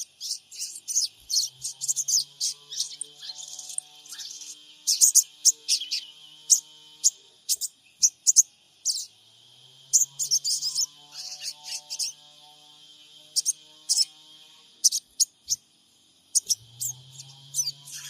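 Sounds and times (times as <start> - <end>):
bird giving sharp high chirps: 0.0 - 9.1, 14.8 - 15.6, 16.3 - 18.0
high insect-like drone: 0.0 - 18.0.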